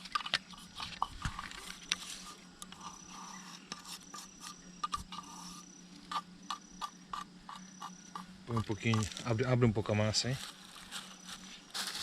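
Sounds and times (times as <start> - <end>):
spoon scraping a container: 0.0 - 9.1.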